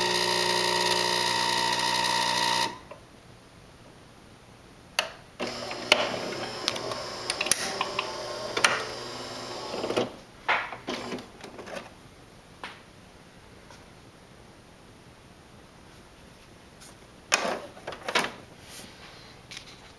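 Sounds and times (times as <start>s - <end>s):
espresso machine whining and rattling: 0.0s - 2.9s, 5.4s - 10.2s.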